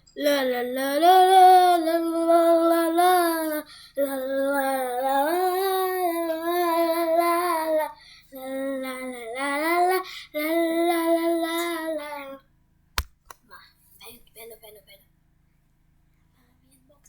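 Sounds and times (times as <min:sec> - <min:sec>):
child singing: 0:00.1 - 0:12.4.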